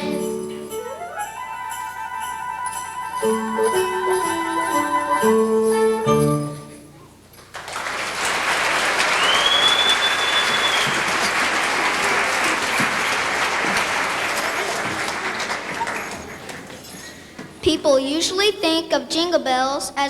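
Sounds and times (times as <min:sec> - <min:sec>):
music with sleigh bells: 0:00.0 - 0:06.9
audience applauding: 0:07.4 - 0:16.9
person whistling: 0:09.2 - 0:11.1.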